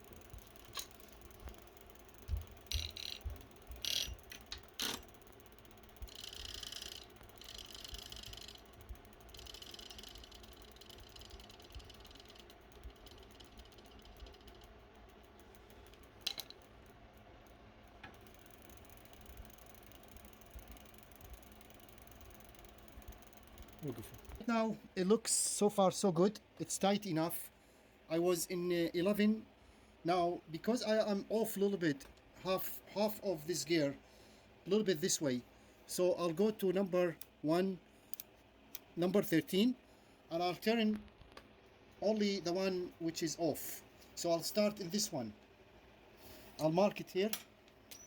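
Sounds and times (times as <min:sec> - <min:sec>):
whirring ratcheting sound: 0:00.0 - 0:24.5.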